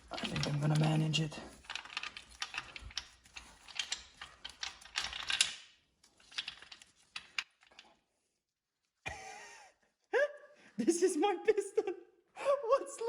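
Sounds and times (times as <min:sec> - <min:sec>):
metal engine parts clicking and rattling: 0:00.0 - 0:07.9.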